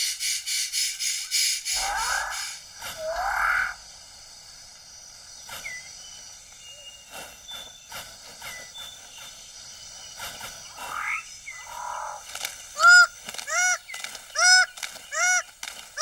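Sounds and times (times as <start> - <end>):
forest background: 0.0 - 16.0
rough rising animal calls: 1.8 - 3.8.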